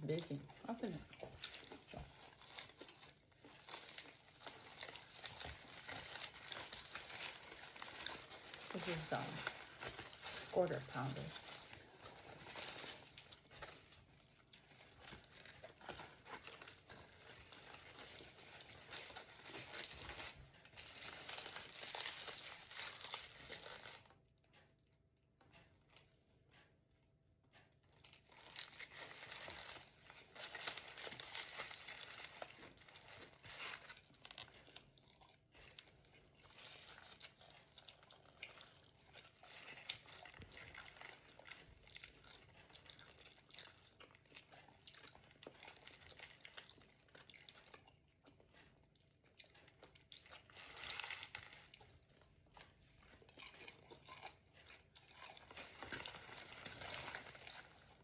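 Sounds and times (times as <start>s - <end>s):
paper wrapper crinkling: 0.0s - 24.1s, 28.0s - 47.1s, 49.9s - 58.0s
food being chewed and crunched: 0.0s - 24.7s, 25.4s - 26.7s, 27.5s - 58.0s.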